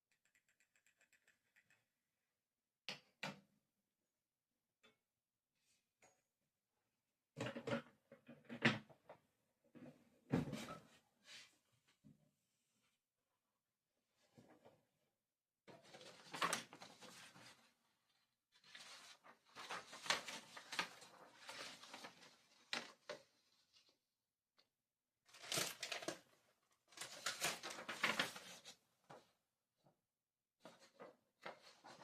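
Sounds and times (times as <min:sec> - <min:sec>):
paper rustling and tearing: 0:25.3 - 0:26.2, 0:26.9 - 0:28.7.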